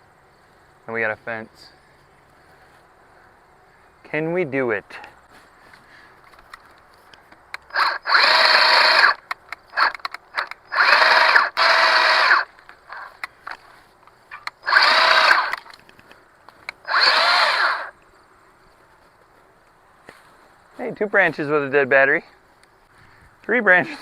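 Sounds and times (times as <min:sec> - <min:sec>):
branches clicking and snapping: 0:05.4 - 0:18.1
electric chainsaw cutting branches: 0:07.6 - 0:13.4, 0:14.3 - 0:15.8, 0:16.7 - 0:18.0.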